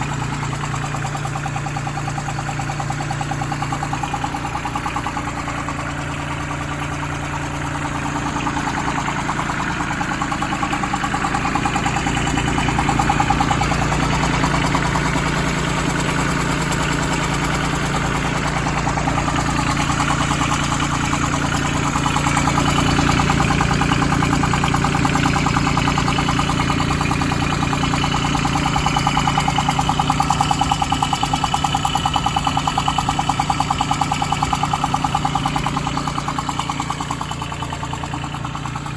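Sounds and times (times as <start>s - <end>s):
tractor engine running: 0.0s - 38.9s
fast regular knocking tick: 0.3s - 38.9s.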